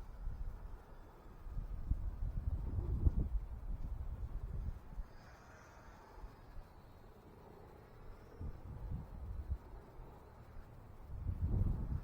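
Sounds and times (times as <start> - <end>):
wind buffeting microphone: 1.5 - 5.0, 11.1 - 12.0.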